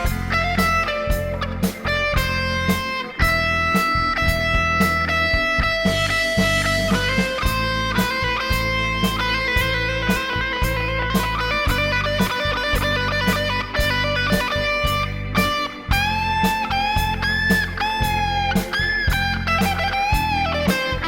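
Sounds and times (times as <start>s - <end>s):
electric guitar lead melody: 0.0s - 21.0s
low accompaniment with beat: 0.0s - 21.0s.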